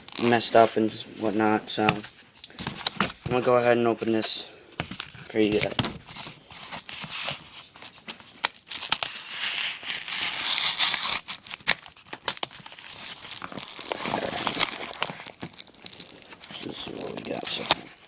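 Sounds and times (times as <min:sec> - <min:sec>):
packaging being torn open: 0:08.3 - 0:18.0.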